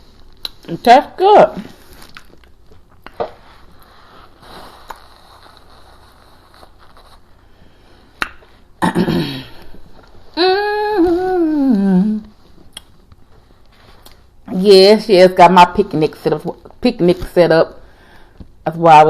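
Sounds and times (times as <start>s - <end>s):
woman humming mmm: 10.3s - 12.4s.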